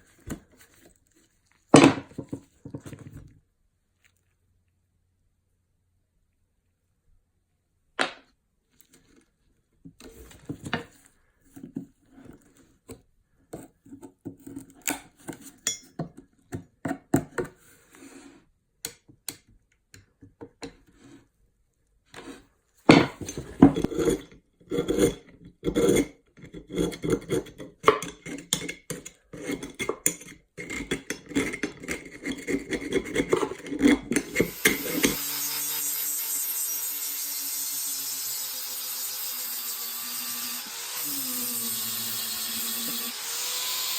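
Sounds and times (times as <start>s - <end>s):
small power tool running: 34.3s - 43.9s.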